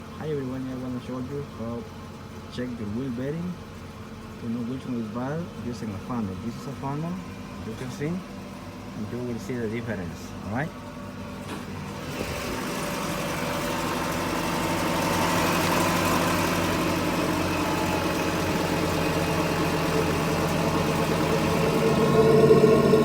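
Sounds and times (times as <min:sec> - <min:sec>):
car drivetrain humming: 0:00.0 - 0:23.0.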